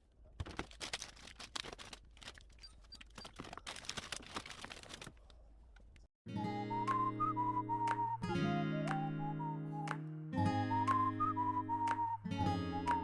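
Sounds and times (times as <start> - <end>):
rustling of household items: 0.3 - 5.3
background music with guitar: 6.3 - 13.0
whistled tune: 6.3 - 13.0.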